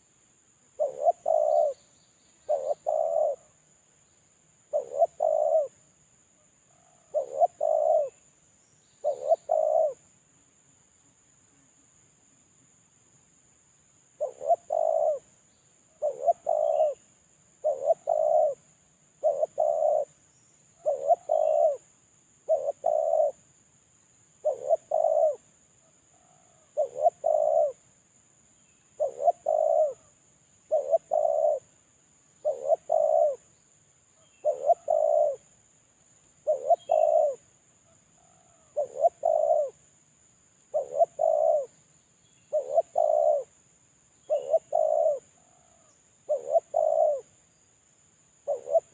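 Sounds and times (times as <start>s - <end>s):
dove cooing: 0.8s - 1.8s, 2.5s - 3.6s, 4.7s - 5.8s, 6.7s - 8.2s, 9.0s - 10.0s, 14.2s - 15.3s, 15.9s - 17.0s, 17.6s - 21.8s, 22.4s - 23.4s, 24.4s - 25.5s, 26.1s - 27.8s, 29.0s - 31.8s, 32.4s - 33.5s, 34.2s - 35.6s, 36.4s - 37.5s, 38.2s - 39.8s, 40.7s - 41.8s, 42.5s - 43.6s, 44.2s - 47.3s, 48.4s - 48.9s.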